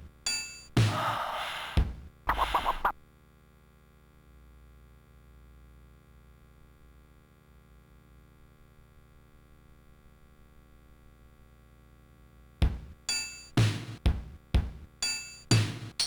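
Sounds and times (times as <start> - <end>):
sampled drum machine beat: 0.8 - 2.9, 12.6 - 16.0.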